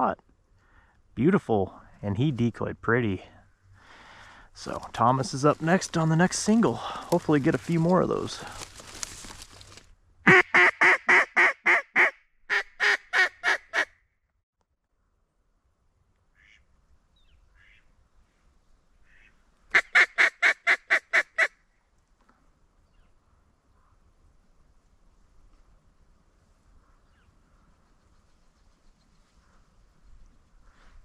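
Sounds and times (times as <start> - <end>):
mallard quacking: 10.3 - 13.9.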